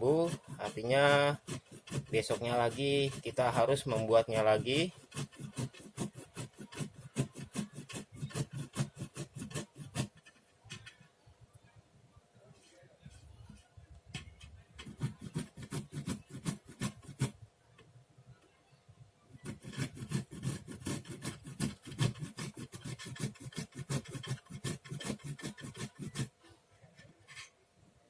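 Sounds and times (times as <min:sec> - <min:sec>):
ginger grating on hand grater: 0:00.0 - 0:11.0, 0:14.8 - 0:17.4, 0:19.4 - 0:26.3.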